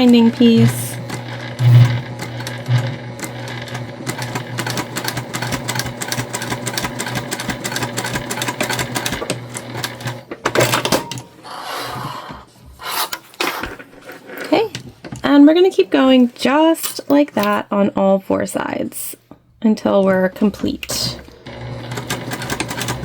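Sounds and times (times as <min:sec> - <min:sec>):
sewing machine running: 0:00.0 - 0:10.9, 0:21.4 - 0:23.0.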